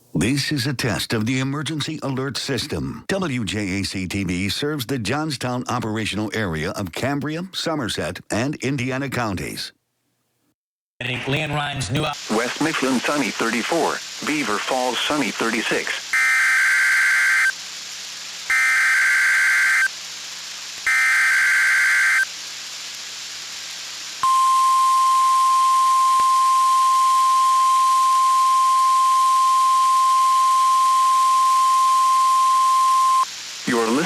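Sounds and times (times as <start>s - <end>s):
steady warning alarm tone: 16.2s - 17.6s, 18.5s - 19.9s, 20.9s - 22.3s, 24.2s - 33.2s.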